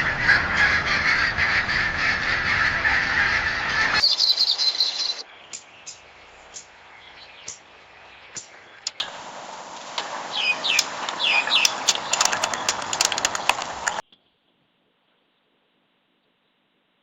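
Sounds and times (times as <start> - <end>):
bird chirps: 0.0 - 14.0
rapid clicking bird calls: 0.0 - 14.1
steady hiss: 4.5 - 14.0.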